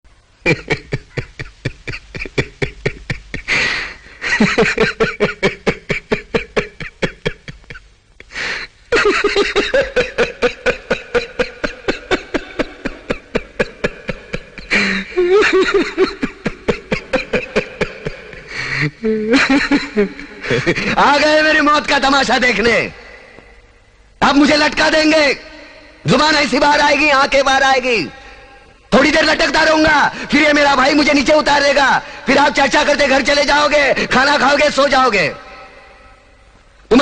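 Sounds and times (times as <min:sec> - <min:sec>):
man laughing: 0:00.4 - 0:21.2
loud gasping breath: 0:03.5 - 0:04.2, 0:08.3 - 0:08.8, 0:14.7 - 0:15.2, 0:18.2 - 0:19.3.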